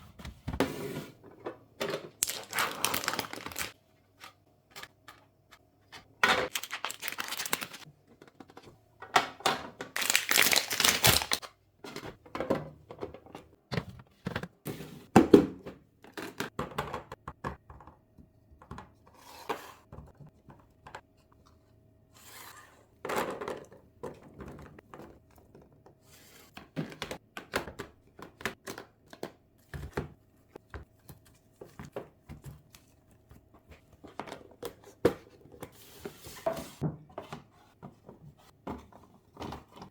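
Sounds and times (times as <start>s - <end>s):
plastic packaging crinkling: 2.2s - 3.8s, 6.4s - 7.8s, 9.9s - 11.4s.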